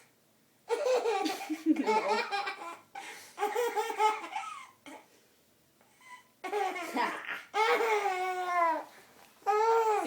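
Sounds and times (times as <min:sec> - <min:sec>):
toddler laughing: 0:00.7 - 0:05.0, 0:06.4 - 0:08.8
toddler babbling: 0:09.5 - 0:10.0.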